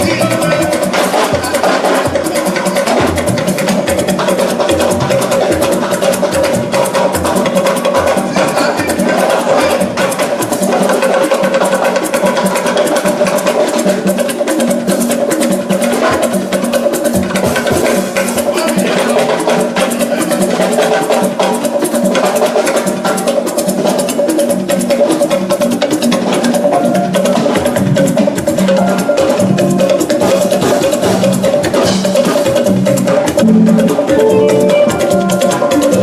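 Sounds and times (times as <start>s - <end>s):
fast busy percussion: 0.0s - 36.0s
steady held note: 33.4s - 36.0s.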